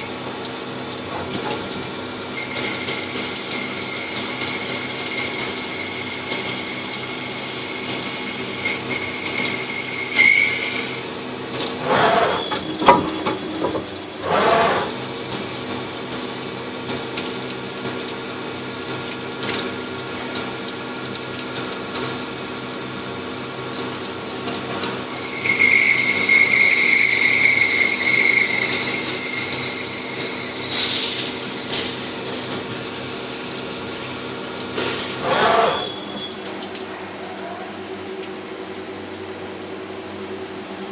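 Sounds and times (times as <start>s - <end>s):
machine mechanical hum: 0.0s - 40.9s
high machine whine: 25.0s - 33.1s.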